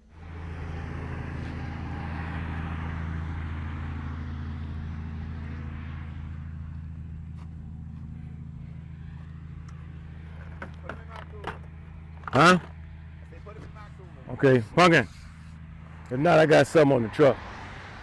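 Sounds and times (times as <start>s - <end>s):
vehicle engine humming: 0.0s - 18.0s.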